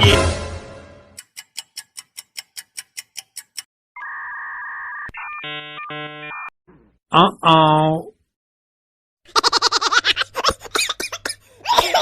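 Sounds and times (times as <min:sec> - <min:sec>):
click: 0:01.2 - 0:03.7
clock ticking quickly: 0:01.2 - 0:03.7
two-tone buzzer: 0:05.1 - 0:06.5.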